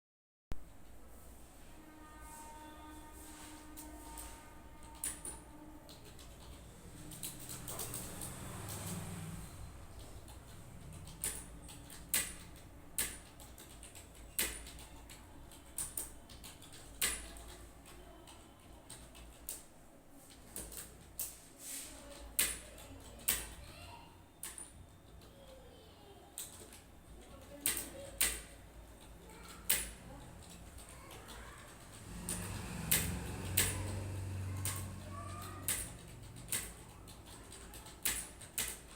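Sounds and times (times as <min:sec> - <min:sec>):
keyboard keys clicking: 0:09.9 - 0:19.6, 0:26.4 - 0:38.9.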